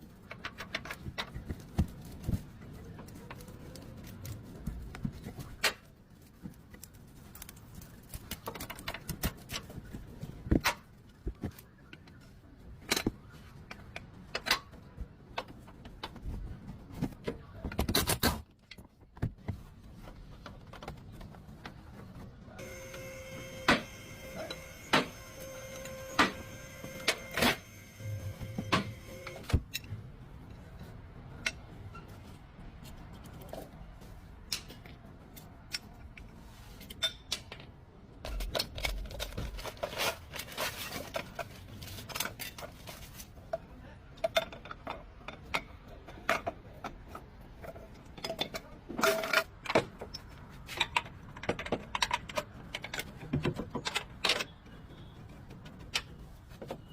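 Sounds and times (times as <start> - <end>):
steady tone: 22.6 - 29.4.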